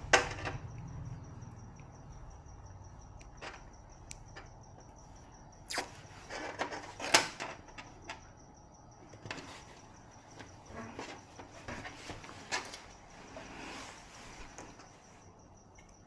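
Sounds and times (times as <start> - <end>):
irregular clicks and knocks: 3.2 - 5.0.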